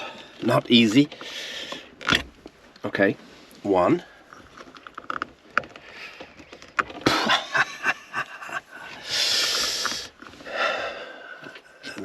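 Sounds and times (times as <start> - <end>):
plastic knobs clicking and scraping: 4.3 - 7.2
breathy hiss: 8.8 - 11.4.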